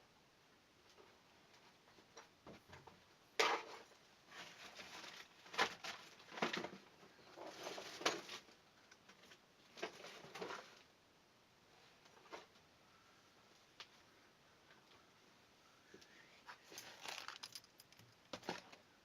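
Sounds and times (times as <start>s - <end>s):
tools scraping and clattering: 16.7s - 18.7s.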